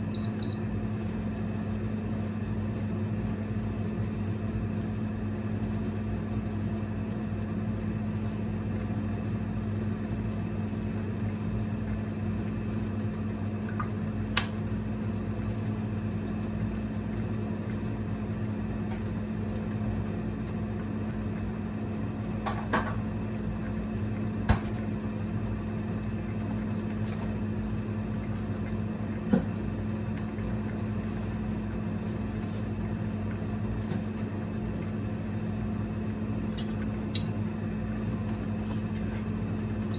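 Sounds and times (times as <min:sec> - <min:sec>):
induction cooktop humming: 0:00.0 - 0:39.9
sharp clicks from cookware: 0:36.6 - 0:37.4.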